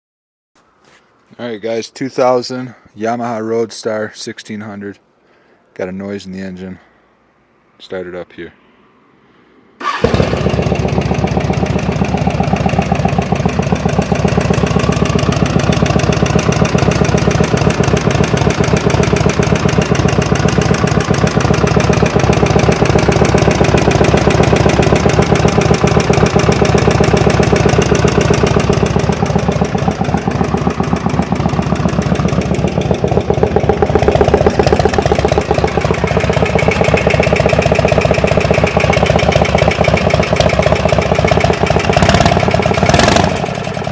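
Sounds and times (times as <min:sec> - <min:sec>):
motorcycle engine idling: 0:09.9 - 0:43.9.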